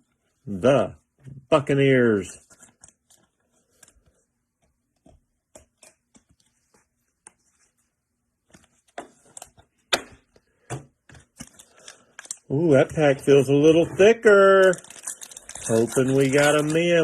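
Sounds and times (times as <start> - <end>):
card pack wrapper crinkling and tearing: 11.3 - 17.0
wrapper rustling: 11.3 - 17.0.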